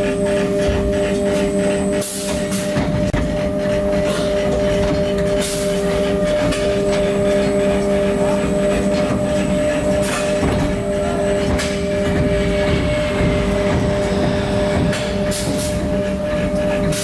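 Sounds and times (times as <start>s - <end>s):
machine mechanical hum: 0.0s - 17.0s
sand blasting hiss: 10.2s - 17.0s.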